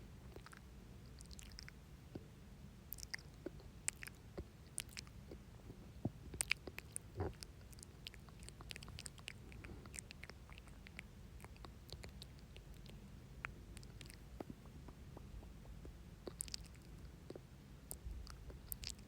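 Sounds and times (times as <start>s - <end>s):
wet mouth clicks and smacks: 6.3s - 19.0s.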